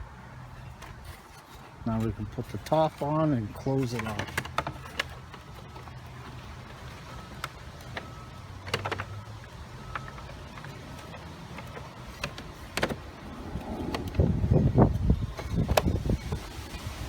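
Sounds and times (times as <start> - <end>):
plastic parts clicking and knocking: 0.7 - 14.2.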